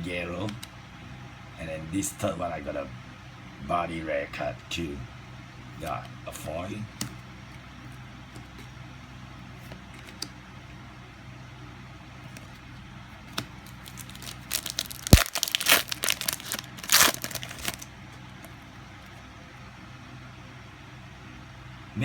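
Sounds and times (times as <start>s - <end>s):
steady low hum: 0.0s - 22.0s
wrapper crinkling and tearing: 13.6s - 17.9s.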